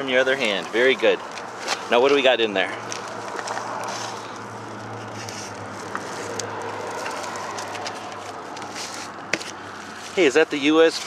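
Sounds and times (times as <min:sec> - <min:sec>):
packaging rustling: 0:00.1 - 0:11.0.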